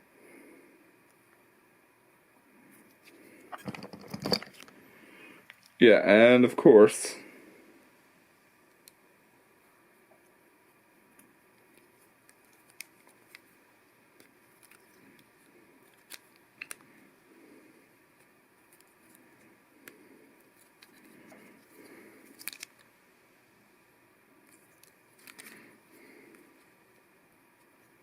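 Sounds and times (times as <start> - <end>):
plastic pieces clicking together: 22.3 - 22.8, 24.8 - 25.6.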